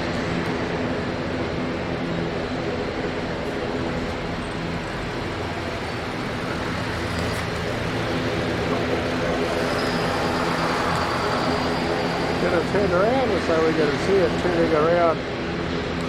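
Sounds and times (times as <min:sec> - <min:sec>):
jet engines rumbling: 0:00.0 - 0:16.0.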